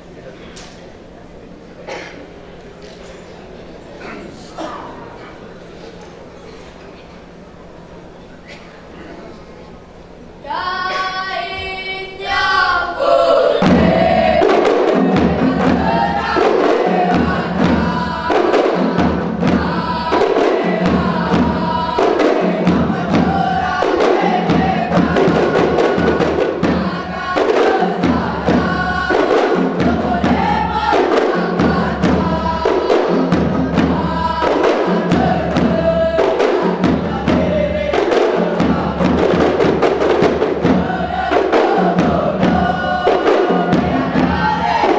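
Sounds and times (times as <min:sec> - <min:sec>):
group chanting: 0:10.4 - 0:44.9
rhythmic hand drums: 0:10.5 - 0:44.9.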